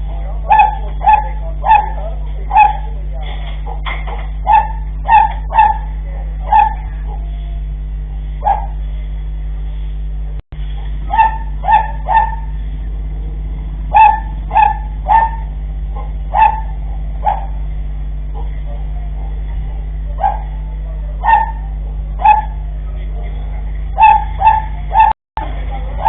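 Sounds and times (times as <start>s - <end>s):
low hum: 0.0s - 26.0s
dog barking: 0.4s - 3.0s, 3.6s - 7.4s, 8.4s - 8.8s, 11.0s - 12.6s, 13.9s - 17.6s, 18.4s - 23.1s, 23.9s - 25.2s.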